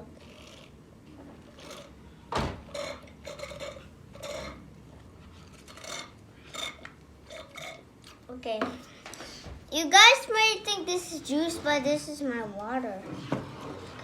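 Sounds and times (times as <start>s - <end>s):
small objects rubbing and clinking: 5.4s - 8.2s.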